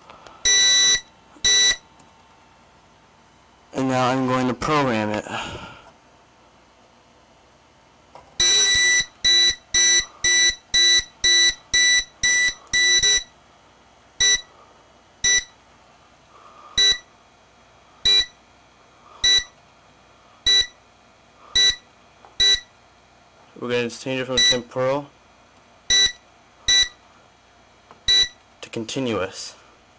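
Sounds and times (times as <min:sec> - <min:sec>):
alarm panel buzzer beeping: 0:00.4 - 0:01.8, 0:08.4 - 0:13.4, 0:14.2 - 0:14.5, 0:15.2 - 0:15.6, 0:16.8 - 0:17.1, 0:18.0 - 0:18.4, 0:19.2 - 0:19.6, 0:20.5 - 0:20.8, 0:21.5 - 0:22.7, 0:24.3 - 0:24.7, 0:25.9 - 0:27.0, 0:28.0 - 0:28.4.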